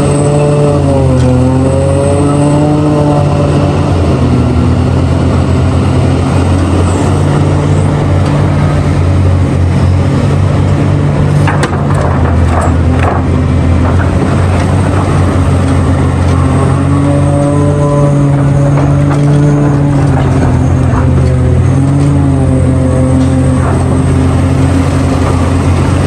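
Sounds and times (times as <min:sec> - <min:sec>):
excavator engine running: 0:00.0 - 0:26.0
short knocks and rattles: 0:11.2 - 0:17.0.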